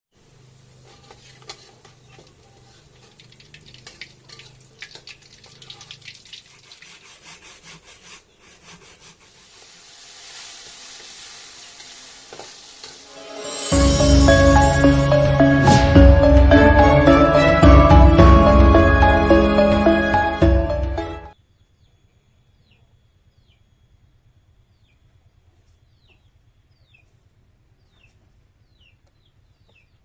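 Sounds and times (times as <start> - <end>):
frying hiss: 0.1 - 14.5
utensils clicking and scraping: 0.8 - 5.8
loud music: 13.1 - 21.3.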